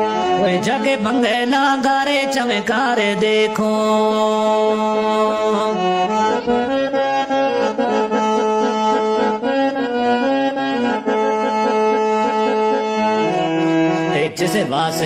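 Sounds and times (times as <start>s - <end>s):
free-reed keyboard melody: 0.0s - 15.0s.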